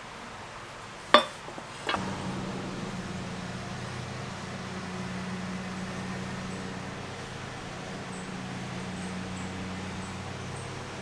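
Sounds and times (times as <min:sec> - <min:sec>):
sharp clink of hard parts: 0:01.1 - 0:02.0
small knock: 0:01.2 - 0:02.0.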